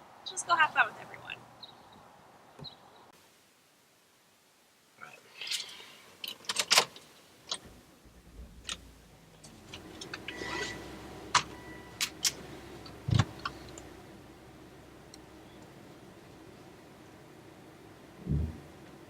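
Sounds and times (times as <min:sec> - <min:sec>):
low steady hum: 0:07.6 - 0:19.0.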